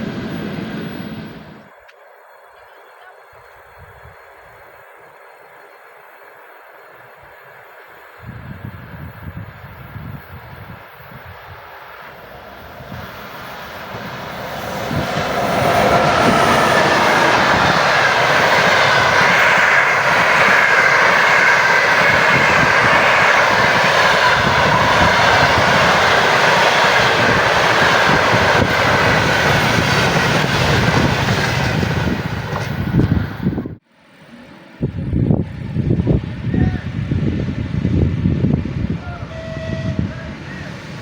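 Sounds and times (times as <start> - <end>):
train running gear rushing: 6.4 - 33.8.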